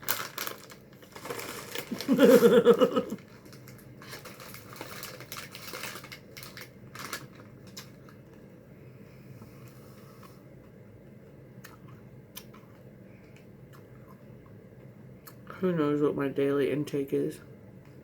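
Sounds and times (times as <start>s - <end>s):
faint crinkling and clicking: 3.2s - 8.6s.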